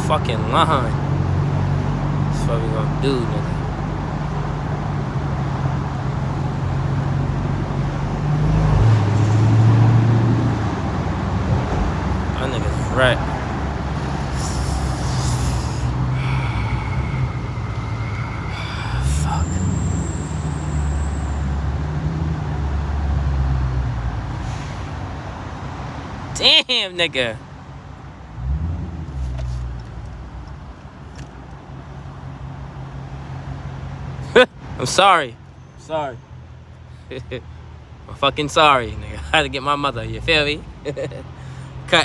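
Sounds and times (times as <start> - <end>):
car engine running: 0.0 - 20.8, 28.5 - 32.9
road noise: 0.0 - 42.0.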